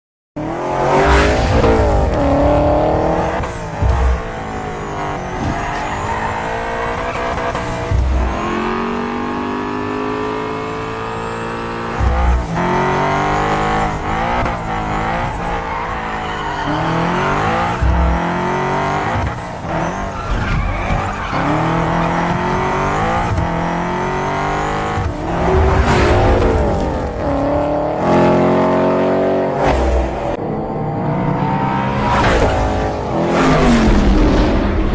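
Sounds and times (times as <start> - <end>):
car engine revving hard: 0.4 - 30.5, 31.2 - 34.9
tires squealing: 0.4 - 34.9.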